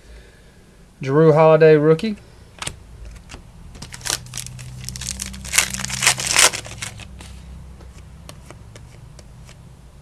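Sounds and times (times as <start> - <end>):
faint steady hum: 0.0 - 10.0
cards rustling: 3.0 - 9.6
card pack wrapper crinkling and tearing: 3.1 - 7.2.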